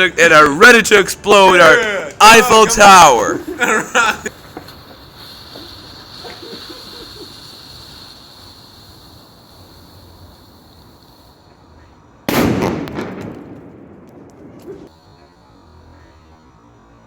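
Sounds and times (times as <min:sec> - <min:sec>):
firecracker bang: 0:01.6 - 0:11.3, 0:12.3 - 0:14.9.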